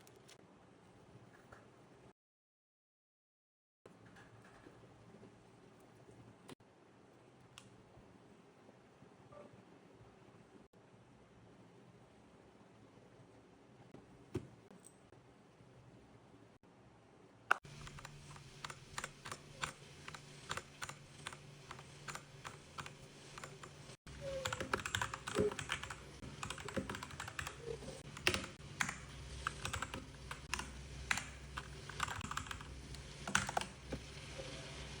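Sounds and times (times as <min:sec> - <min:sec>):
mechanical keyboard typing: 0:17.5 - 0:33.9.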